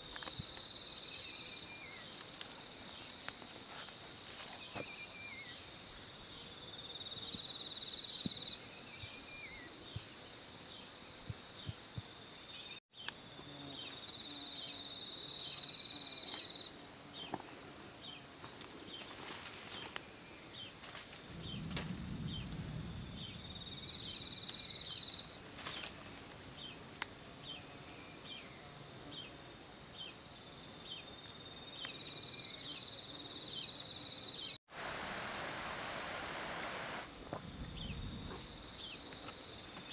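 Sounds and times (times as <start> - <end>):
crickets chirping: 0.0 - 39.9
high-pitched insect chorus: 0.0 - 39.9
low rumble: 21.3 - 25.0, 37.3 - 38.7.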